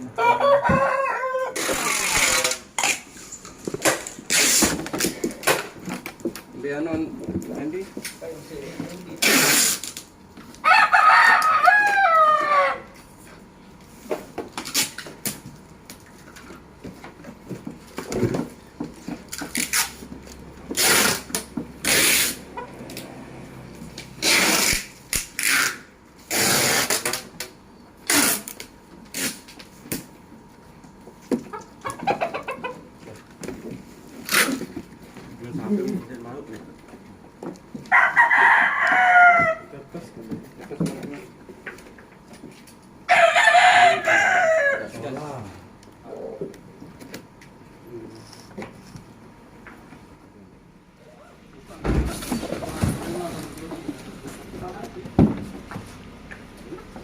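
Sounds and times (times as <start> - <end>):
rooster crowing: 0.1 - 2.4, 10.6 - 13.0, 37.9 - 39.7, 43.1 - 45.0
rustling scraping noise: 1.6 - 6.0, 52.1 - 56.0.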